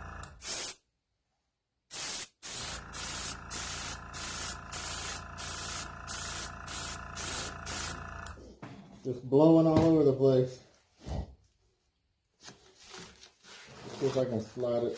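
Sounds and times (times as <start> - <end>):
airbrush spraying hissing bursts: 0.4 - 0.8, 1.9 - 8.0.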